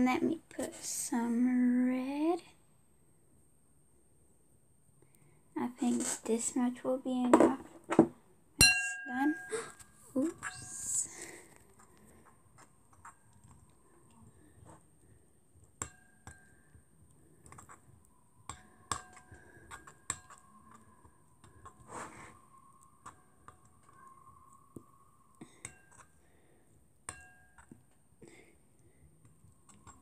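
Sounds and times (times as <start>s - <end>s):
spoon clinking against bowl: 8.6s - 9.5s, 27.1s - 27.7s.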